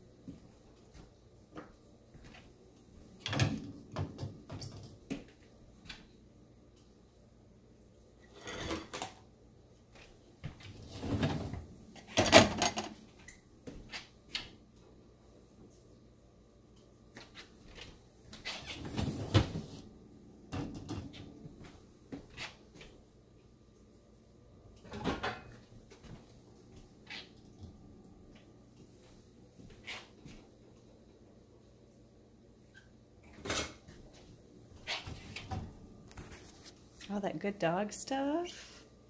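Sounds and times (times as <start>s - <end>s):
dishes and racks clattering: 8.3s - 9.2s, 10.8s - 13.1s, 24.8s - 25.7s, 33.2s - 34.0s.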